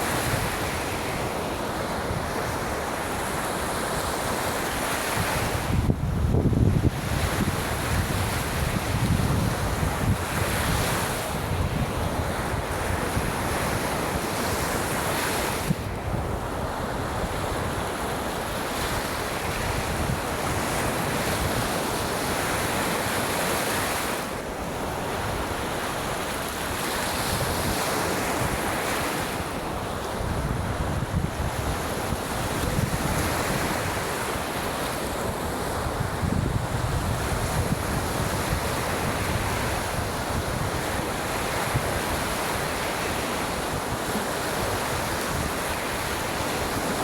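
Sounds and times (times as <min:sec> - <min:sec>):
waves breaking on a beach: 0:00.0 - 0:47.0
wind buffeting microphone: 0:05.1 - 0:14.7, 0:29.8 - 0:34.1, 0:35.3 - 0:42.6.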